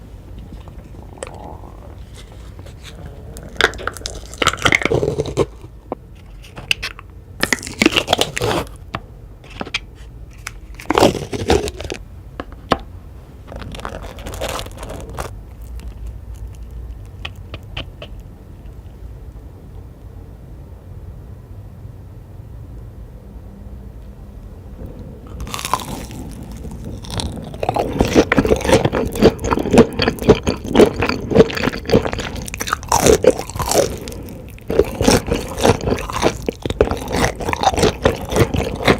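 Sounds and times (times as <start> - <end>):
crunchy bites and chewing: 0.3 - 8.8, 10.4 - 12.0, 25.3 - 38.9.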